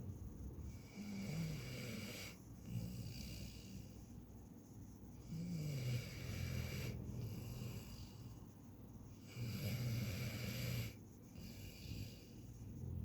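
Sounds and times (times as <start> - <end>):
slow low snoring: 0.7 - 4.0, 5.2 - 8.3, 9.2 - 13.0.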